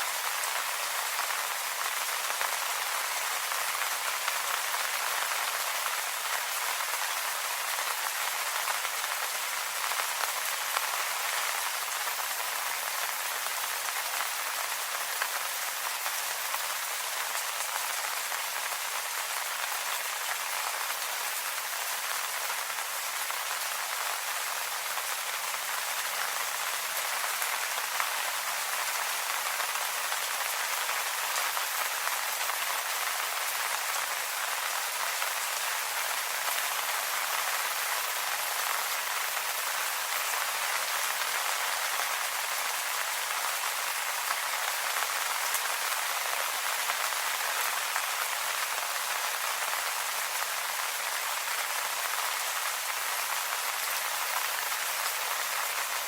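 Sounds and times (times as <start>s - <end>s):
rain falling on leaves: 0.0s - 56.0s.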